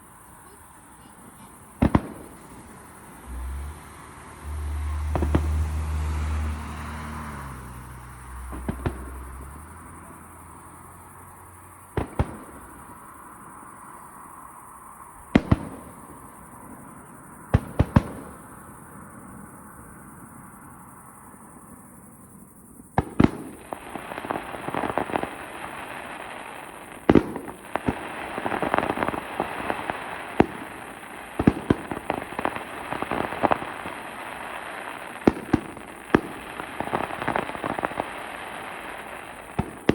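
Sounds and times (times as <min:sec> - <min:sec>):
fireworks crackling and banging: 0:00.0 - 0:20.2, 0:20.8 - 0:39.9.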